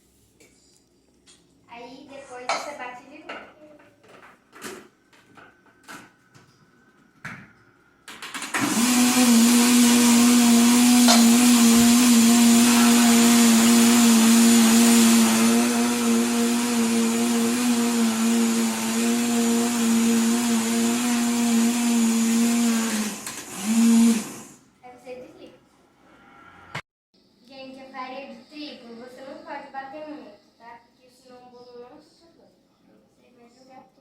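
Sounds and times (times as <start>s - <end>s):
kitchen blender running: 8.1s - 24.7s.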